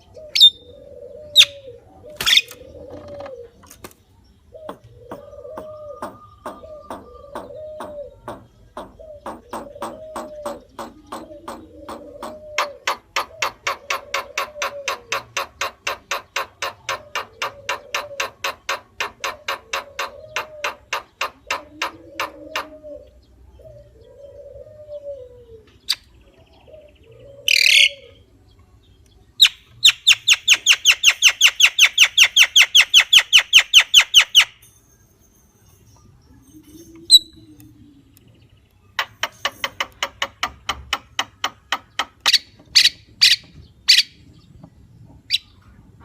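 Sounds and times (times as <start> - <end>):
bird calling with sharp clicks: 2.2 - 4.0.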